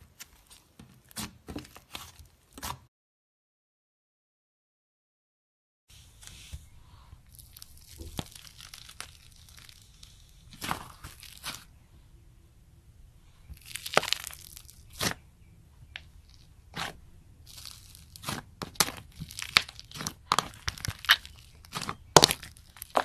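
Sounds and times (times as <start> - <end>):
slime crackling and popping: 7.3 - 11.7, 13.5 - 15.2, 15.9 - 23.0.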